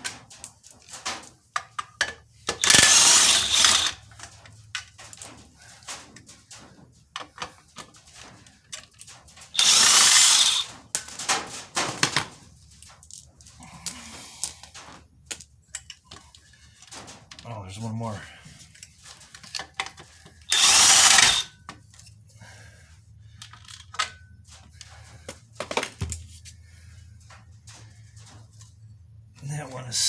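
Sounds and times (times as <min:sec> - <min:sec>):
clicks and knocks of tool and bolts: 0:00.0 - 0:13.6, 0:14.4 - 0:17.5, 0:18.8 - 0:22.2, 0:23.3 - 0:26.3
power tool spinning out bolts: 0:02.5 - 0:04.1, 0:09.5 - 0:10.7, 0:20.5 - 0:21.6.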